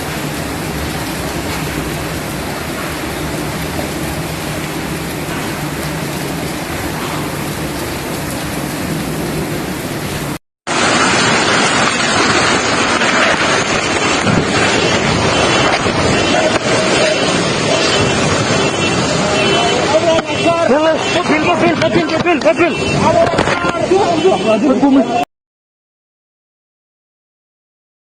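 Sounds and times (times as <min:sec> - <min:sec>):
heavy rain: 0:00.0 - 0:25.2
wind rushing over microphone: 0:00.6 - 0:19.9.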